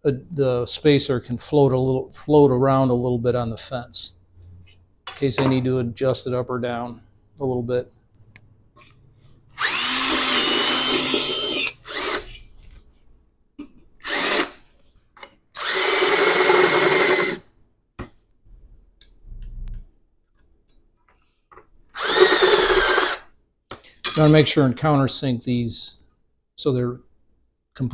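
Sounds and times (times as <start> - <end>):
electric drill whining through metal: 9.5 - 12.5, 14.0 - 14.6, 15.6 - 17.4, 22.0 - 23.3.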